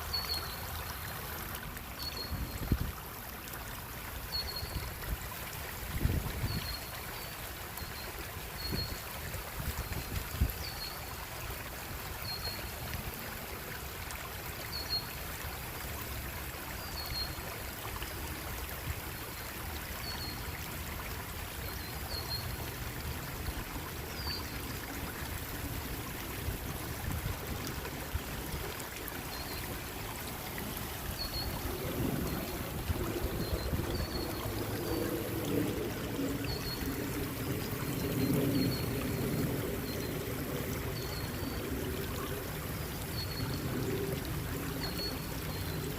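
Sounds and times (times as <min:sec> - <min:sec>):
stream rushing: 0:00.0 - 0:45.9.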